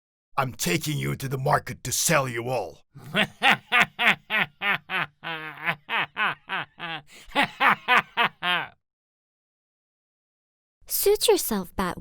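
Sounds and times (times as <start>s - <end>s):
cartoon character laughing: 3.0s - 8.8s.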